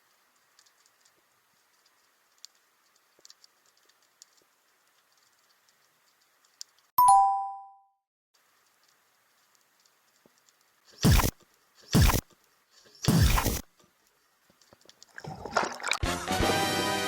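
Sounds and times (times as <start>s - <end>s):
light hiss: 0.0s - 6.9s, 8.4s - 15.2s
underwater clicking and crackle: 0.0s - 6.9s, 8.5s - 10.8s, 13.9s - 16.0s.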